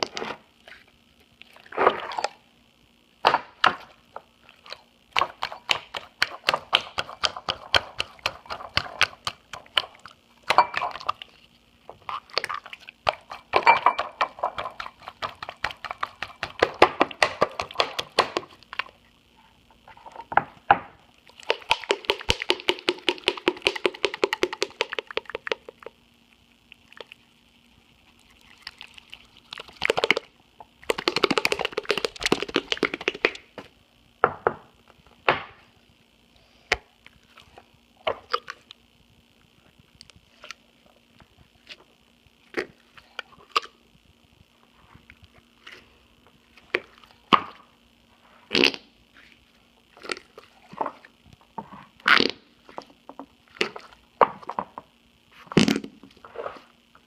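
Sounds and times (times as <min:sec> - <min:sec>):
faint steady hum: 0:00.0 - 0:57.0
slime squelching and popping: 0:03.2 - 0:11.3, 0:12.0 - 0:19.0, 0:21.3 - 0:26.0, 0:26.6 - 0:33.6.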